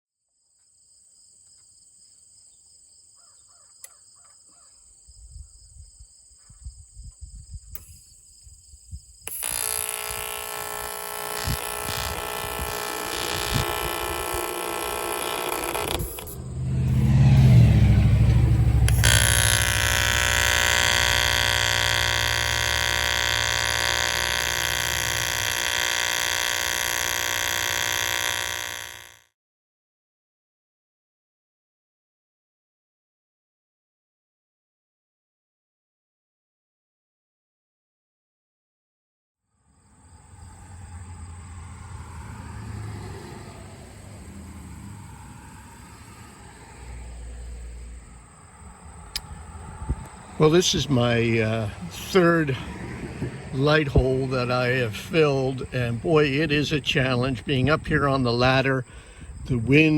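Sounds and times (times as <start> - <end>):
wind rumbling on microphone: 5.1 - 7.8, 48.7 - 50.3, 52.5 - 54.3, 59.2 - 59.9
welding arc buzzing: 9.3 - 29.3, 47.4 - 57.7.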